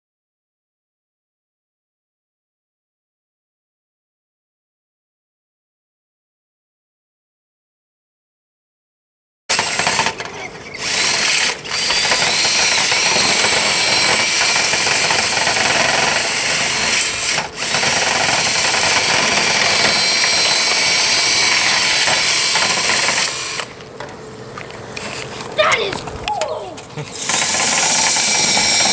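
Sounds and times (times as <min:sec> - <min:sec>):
power drill spinning brush: 0:09.5 - 0:23.8, 0:26.9 - 0:28.9.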